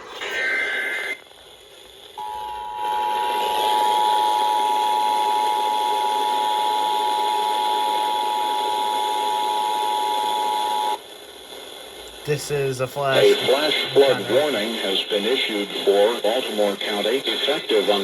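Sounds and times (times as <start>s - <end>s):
background static hiss: 12.0s - 14.6s.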